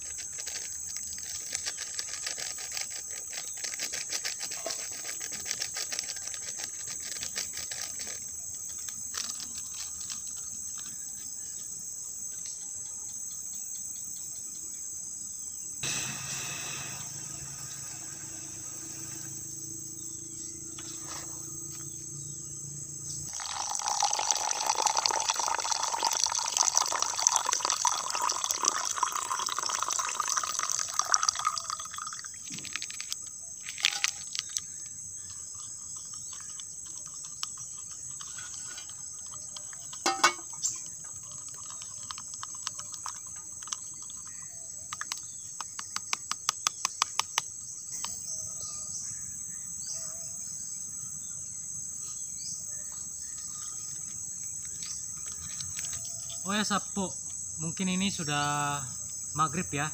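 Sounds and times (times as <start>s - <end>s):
crickets chirping: 0.0s - 59.9s
water running: 23.3s - 32.3s.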